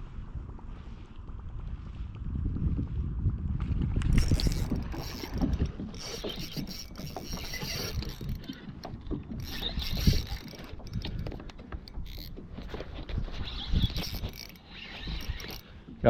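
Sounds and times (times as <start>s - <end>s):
fishing reel clicking and whirring: 4.1s - 16.0s.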